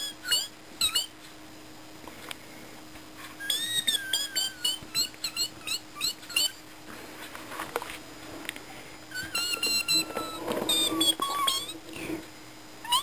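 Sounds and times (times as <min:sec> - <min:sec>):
short high-pitched squeaks: 0:00.0 - 0:01.1, 0:03.4 - 0:06.6, 0:09.1 - 0:11.8.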